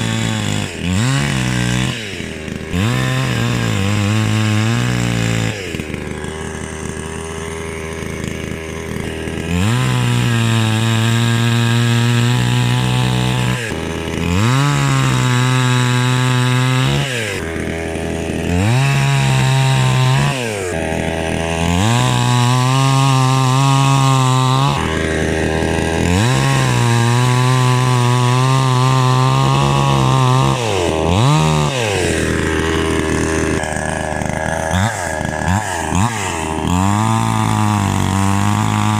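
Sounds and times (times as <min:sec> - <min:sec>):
chainsaw engine revving: 0:00.0 - 0:38.9.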